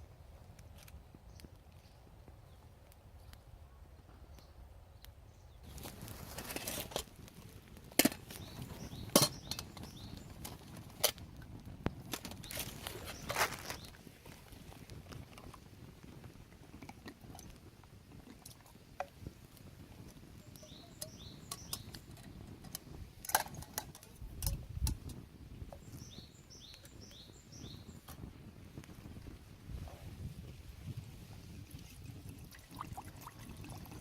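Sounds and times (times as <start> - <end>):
bird chirping: 8.3 - 10.4, 20.4 - 22.2, 25.8 - 28.1.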